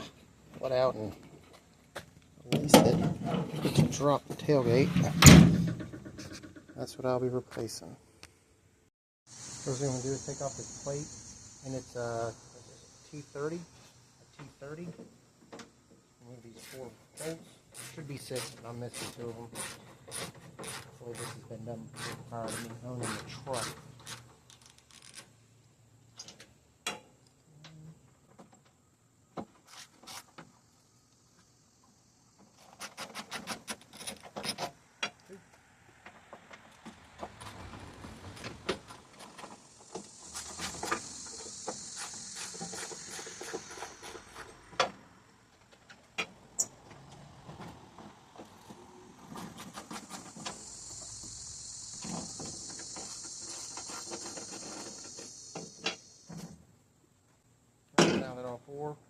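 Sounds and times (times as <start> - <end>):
high-pitched hiss: 9.3 - 26.5, 29.5 - 33.6, 38.2 - 47.3, 48.4 - 56.7
tool scraping: 16.6 - 25.3, 29.6 - 30.4, 32.5 - 34.8, 37.2 - 45.0, 49.2 - 51.3, 51.9 - 56.6.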